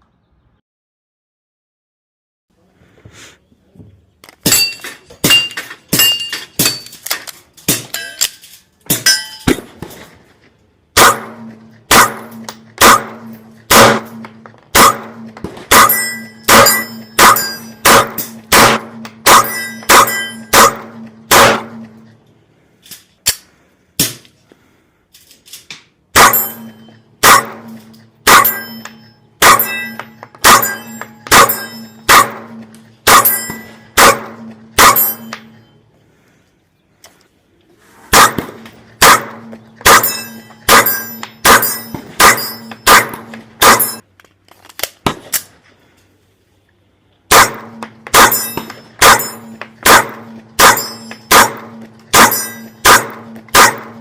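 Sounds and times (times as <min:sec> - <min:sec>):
airsoft pistol shots: 0:11.0 - 0:22.0, 0:26.2 - 0:28.8, 0:29.4 - 0:35.5, 0:38.1 - 0:44.0, 0:47.3 - 0:54.0.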